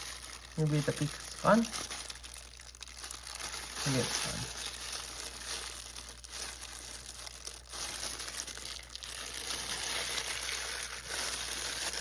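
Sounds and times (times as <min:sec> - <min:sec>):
plastic bag crinkling: 0:00.0 - 0:12.0.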